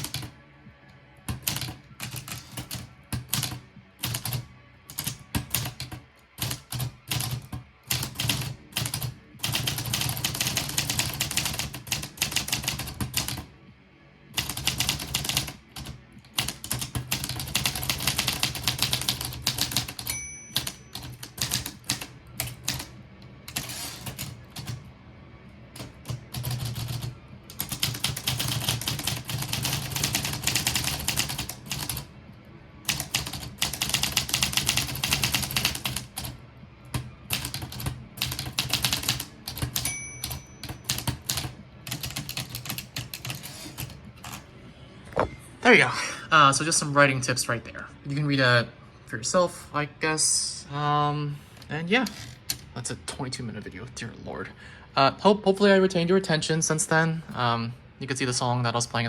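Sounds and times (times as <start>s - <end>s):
background music: 0.0s - 59.0s
typewriter margin bell: 16.4s - 22.8s, 23.5s - 24.3s, 37.3s - 44.0s.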